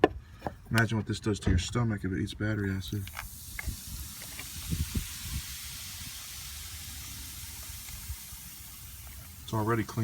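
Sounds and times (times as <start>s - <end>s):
soda fizzing and hissing: 2.7s - 10.0s.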